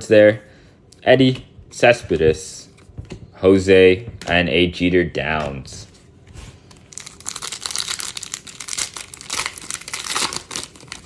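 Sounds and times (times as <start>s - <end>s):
plastic wrapper tearing and crinkling: 6.7s - 11.0s.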